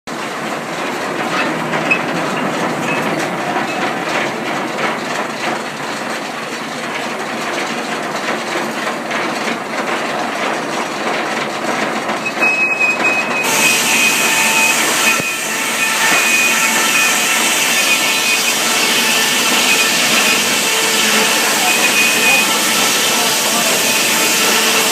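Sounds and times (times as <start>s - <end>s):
sawmill machinery clatter: 0.1s - 24.9s
high whine: 13.4s - 24.9s
saw blade cutting wood: 13.4s - 24.9s.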